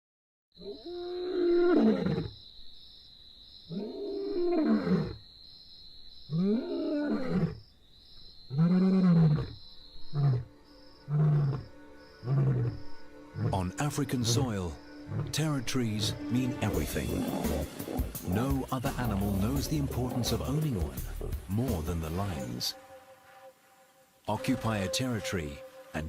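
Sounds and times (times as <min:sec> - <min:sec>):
lion roaring: 0:11.1 - 0:15.6, 0:16.7 - 0:21.5
lion grunting: 0:11.1 - 0:21.5.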